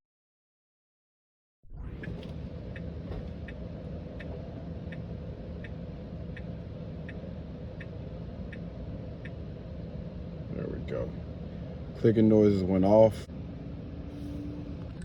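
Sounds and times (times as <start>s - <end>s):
low cabin hum: 1.6s - 15.0s
steady ticking: 2.5s - 10.2s.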